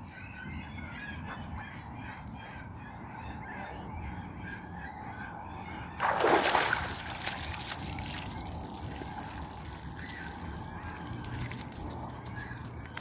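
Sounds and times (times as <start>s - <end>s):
water trickling and lapping: 5.7s - 13.0s.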